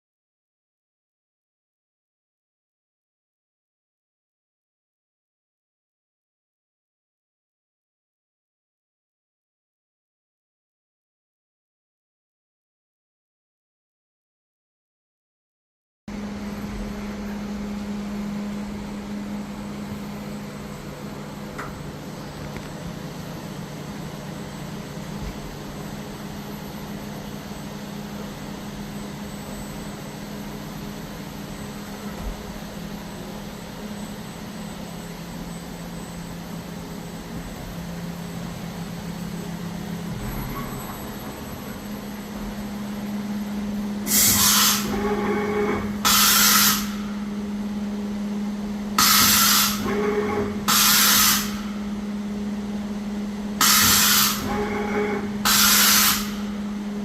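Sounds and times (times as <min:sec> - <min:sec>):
machine humming: 0:16.1 - 0:57.0.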